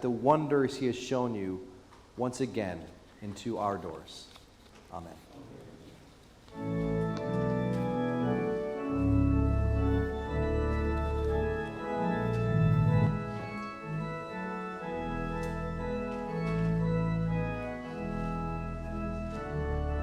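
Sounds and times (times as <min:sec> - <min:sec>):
church organ playing a hymn: 0:06.4 - 0:20.0.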